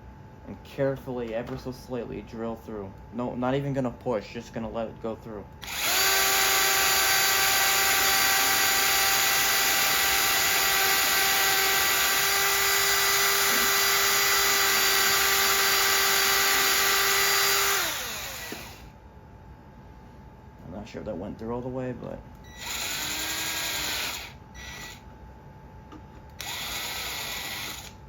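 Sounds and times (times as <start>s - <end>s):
electric drill boring wood: 5.6s - 18.9s, 22.5s - 25.0s, 26.4s - 28.0s.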